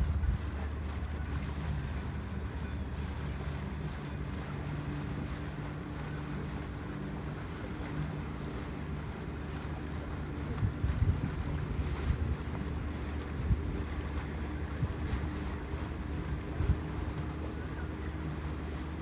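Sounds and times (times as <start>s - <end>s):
wind noise on microphone: 0.0s - 4.1s, 10.0s - 17.3s
boat engine droning: 0.0s - 19.0s.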